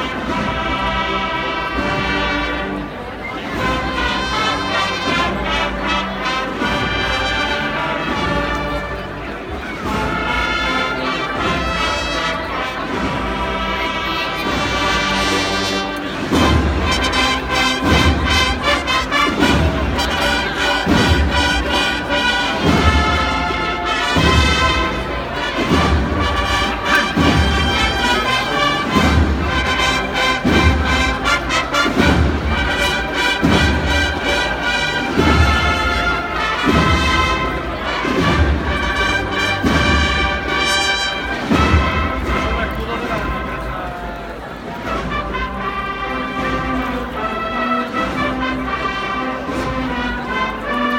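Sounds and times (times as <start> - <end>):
brass band playing a march: 0.0 - 50.9
heavy drum strokes: 16.0 - 50.6.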